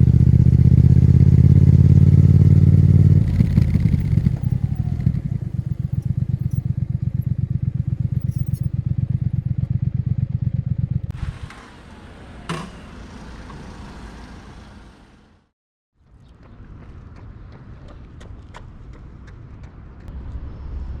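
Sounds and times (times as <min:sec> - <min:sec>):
motorcycle engine idling: 0:00.0 - 0:11.1.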